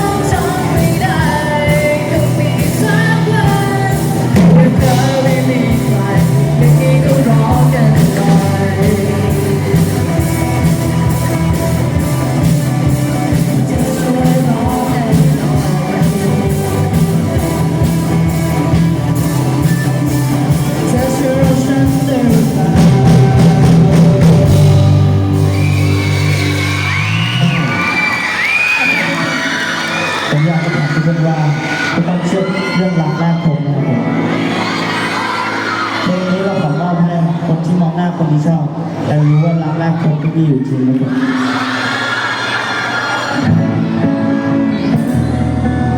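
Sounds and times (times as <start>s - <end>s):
person singing: 0.0s - 27.6s
steady drum beat: 0.0s - 30.2s
live band playing rock-pop: 0.0s - 45.9s.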